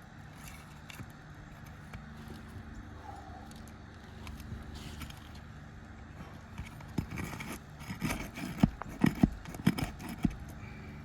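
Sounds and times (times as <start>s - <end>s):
bar scraping under shingles: 6.3s - 10.6s
steel bar clicking under shingles: 6.6s - 10.6s.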